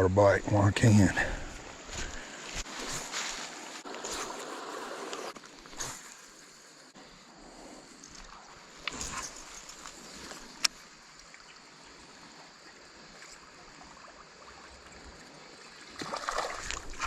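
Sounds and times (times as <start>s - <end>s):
creek water trickling: 0.0s - 17.0s
splashing in water: 15.9s - 17.0s.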